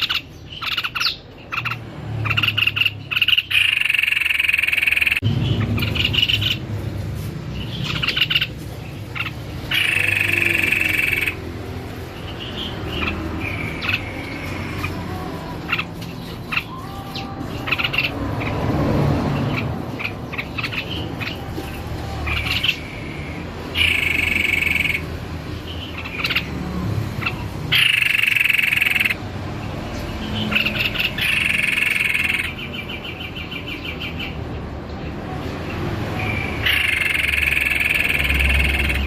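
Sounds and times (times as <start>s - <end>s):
bird rapid trill: 0.0s - 6.9s, 7.5s - 18.7s, 19.3s - 29.2s, 30.2s - 34.4s, 36.2s - 39.0s
bird chirps: 0.0s - 18.6s.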